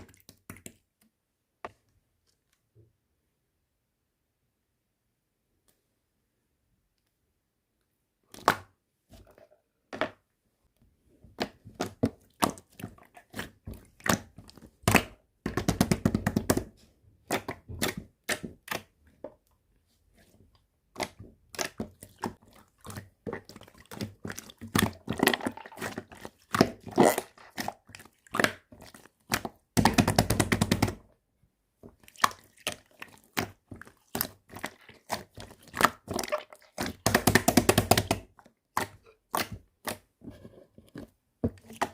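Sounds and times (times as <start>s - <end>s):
slime squished by hand: 31.9s - 40.1s.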